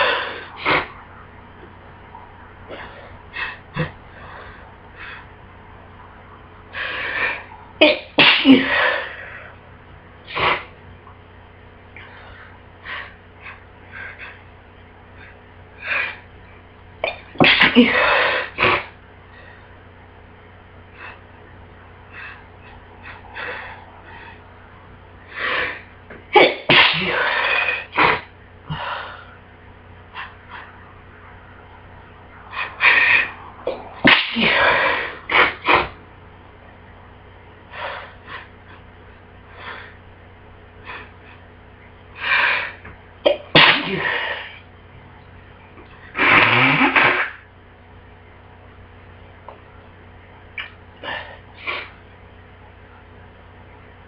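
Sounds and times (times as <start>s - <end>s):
person sneezing: 7.8s - 9.1s, 17.0s - 19.0s, 25.4s - 28.9s, 32.5s - 36.0s, 42.5s - 44.6s, 50.6s - 52.0s.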